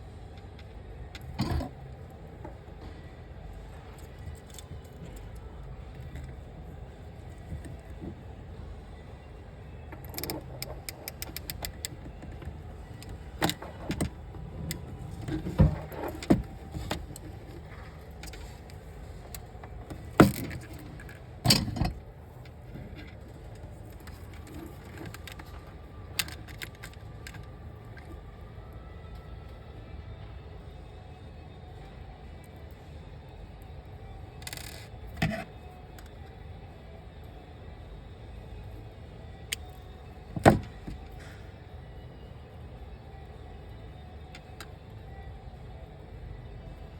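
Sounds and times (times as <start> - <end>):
low steady hum: 0.0 - 46.9
metal clicks of crimp tool: 10.0 - 12.0.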